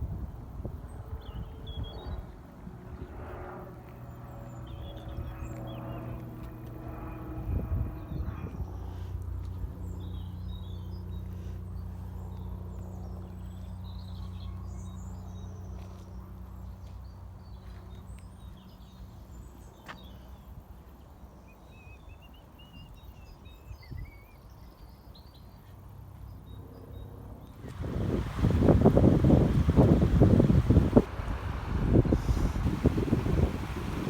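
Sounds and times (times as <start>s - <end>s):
small birds chirping: 4.3s - 6.5s
low steady drone: 27.6s - 34.0s.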